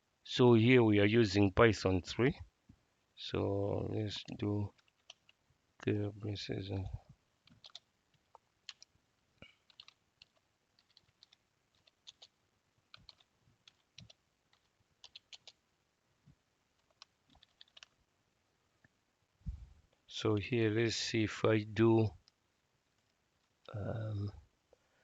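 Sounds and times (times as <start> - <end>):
faint keyboard typing: 3.9 - 5.9, 7.4 - 15.7, 16.7 - 18.0, 22.1 - 24.8.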